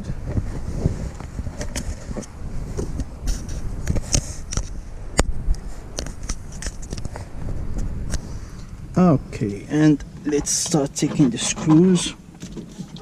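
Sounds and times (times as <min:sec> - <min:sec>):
camera handling rustle: 0:00.3 - 0:08.8.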